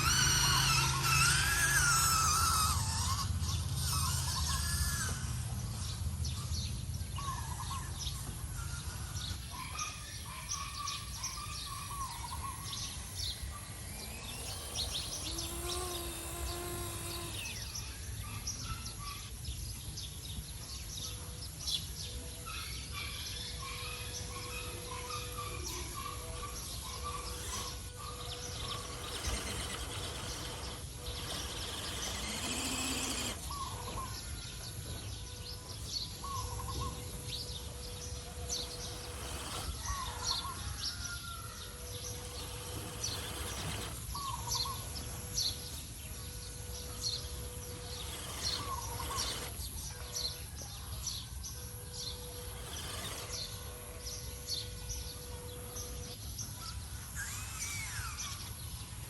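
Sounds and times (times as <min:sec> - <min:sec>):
repeated bird call: 0:00.0 - 0:06.5, 0:21.8 - 0:58.8
birds chirping: 0:00.0 - 0:59.0
faint hum: 0:00.0 - 0:59.0.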